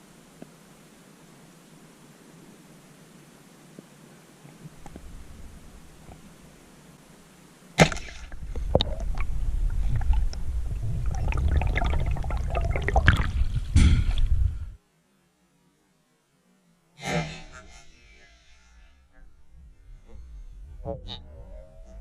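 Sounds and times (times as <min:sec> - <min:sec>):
underwater speargun shot: 0:07.8 - 0:08.3
churning bubbling water: 0:07.8 - 0:13.8.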